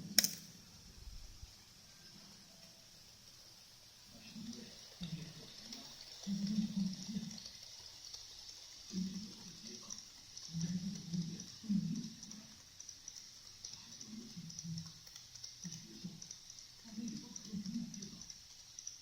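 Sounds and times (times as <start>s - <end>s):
faint high-pitched hiss: 0.0s - 19.0s
muffled voices talking: 4.1s - 7.7s, 8.9s - 12.7s, 13.7s - 15.0s, 15.6s - 18.4s.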